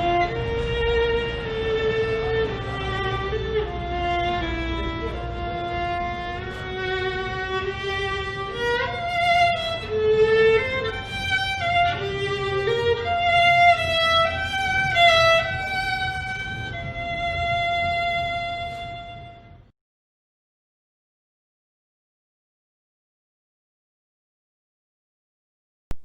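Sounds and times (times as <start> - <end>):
solo instrument slow melody: 0.0 - 19.7.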